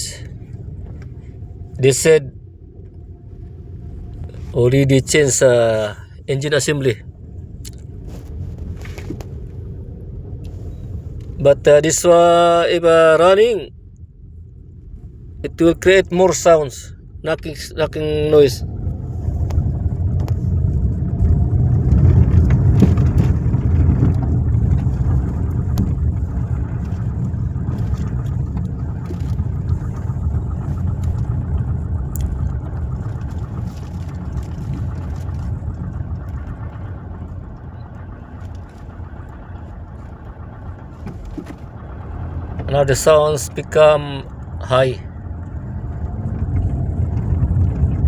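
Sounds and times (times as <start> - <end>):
car engine knocking: 18.8 - 48.0.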